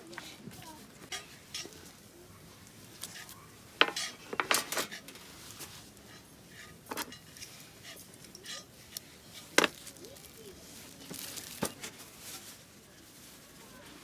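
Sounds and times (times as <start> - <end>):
utensils clinking on dishes: 0.1 - 12.1.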